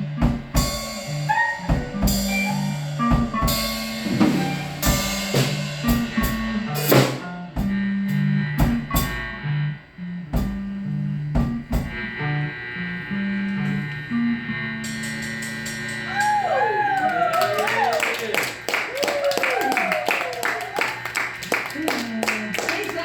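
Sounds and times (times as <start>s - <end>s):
drum kit beat: 0.0s - 12.3s, 18.5s - 23.0s
bass line: 0.0s - 23.0s
guitar: 0.0s - 23.0s.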